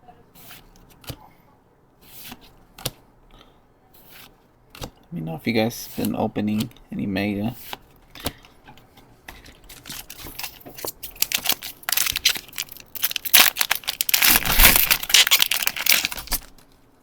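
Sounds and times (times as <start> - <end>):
foil wrapper crinkling and tearing: 9.9 - 16.5.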